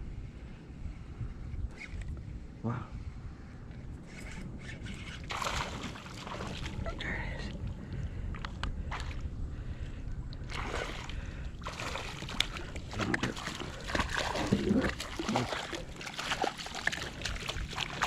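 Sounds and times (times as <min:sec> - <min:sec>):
fish splashing in water: 0:05.3 - 0:06.8, 0:10.5 - 0:18.0.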